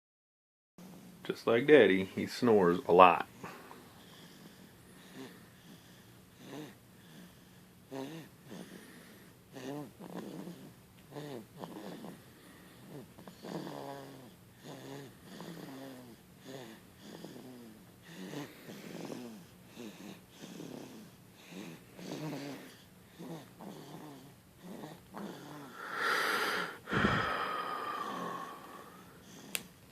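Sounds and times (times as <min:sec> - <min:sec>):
rasping snoring: 0:06.4 - 0:07.3, 0:07.9 - 0:29.6
snort with high whistling tone: 0:07.9 - 0:29.5.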